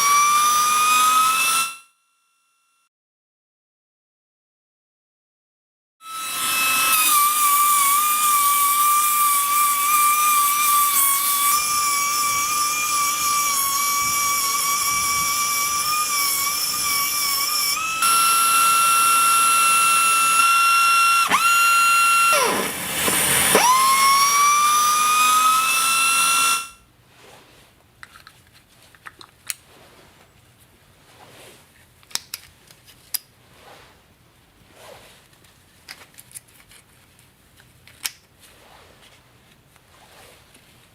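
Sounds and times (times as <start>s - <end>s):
air motor high whine: 11.6s - 26.8s.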